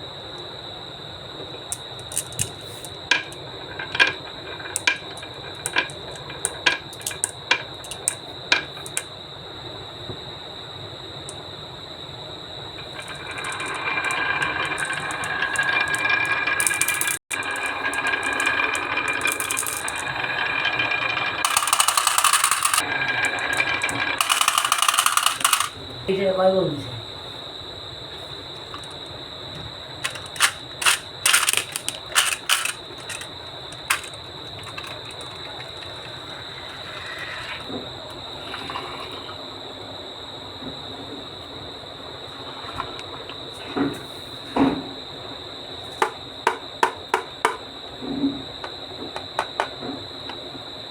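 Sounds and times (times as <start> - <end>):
marbles rolling on wooden track: 1.7 - 9.1, 12.8 - 25.8, 30.0 - 39.4
toys rattling down wooden run: 12.8 - 25.8, 30.0 - 37.7.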